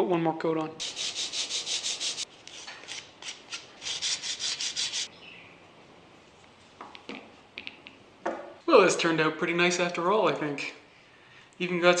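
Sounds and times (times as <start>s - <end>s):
sandpaper rubbing on wood: 0.8s - 2.3s, 2.9s - 5.1s.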